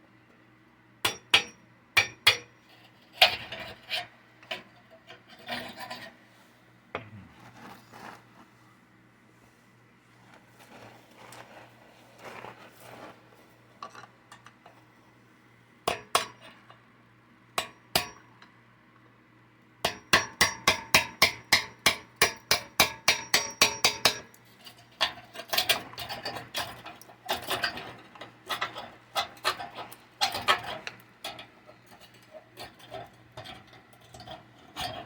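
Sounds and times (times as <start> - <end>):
hammer striking metal: 1.0 - 2.5, 19.9 - 24.2
metal clatter: 24.6 - 35.0.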